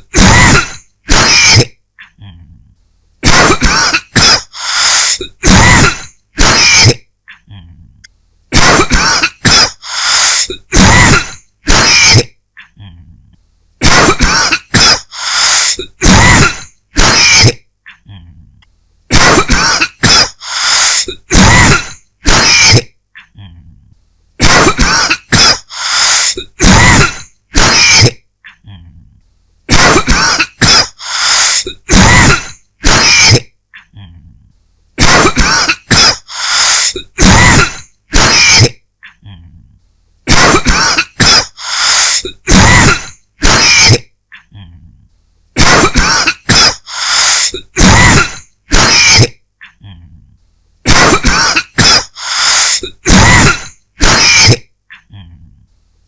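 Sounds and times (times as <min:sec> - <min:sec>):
person dry coughing: 0:00.0 - 0:01.8, 0:03.2 - 0:07.6, 0:08.5 - 0:12.4, 0:13.8 - 0:17.7, 0:19.1 - 0:23.0, 0:24.4 - 0:28.2, 0:29.7 - 0:33.6, 0:35.0 - 0:38.8, 0:40.3 - 0:44.1, 0:45.6 - 0:49.4, 0:50.9 - 0:54.7.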